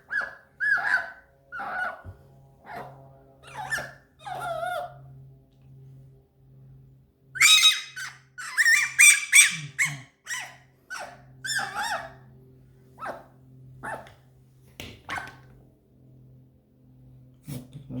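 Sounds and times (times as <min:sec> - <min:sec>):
fox squeaky chirping whines: 0:00.0 - 0:02.1, 0:02.7 - 0:05.0, 0:07.4 - 0:12.2, 0:13.0 - 0:14.1.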